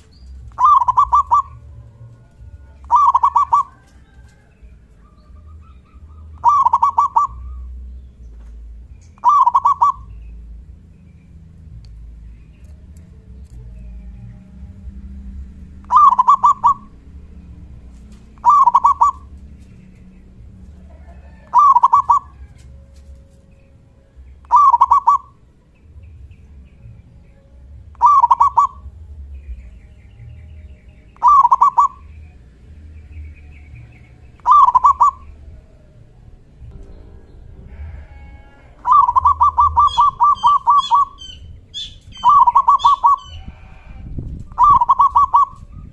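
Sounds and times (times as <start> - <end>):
dove cooing: 0.5 - 1.9, 2.8 - 4.4, 5.1 - 7.8, 9.2 - 10.1, 15.8 - 17.0, 18.4 - 19.4, 20.8 - 22.7, 24.4 - 25.4, 28.0 - 28.9, 31.2 - 32.1, 34.4 - 36.0, 37.7 - 43.9, 44.5 - 45.9.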